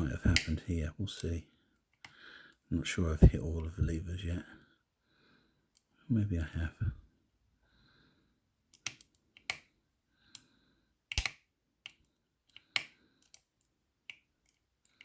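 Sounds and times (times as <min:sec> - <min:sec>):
lock pick metallic clicks: 0:11.1 - 0:15.0.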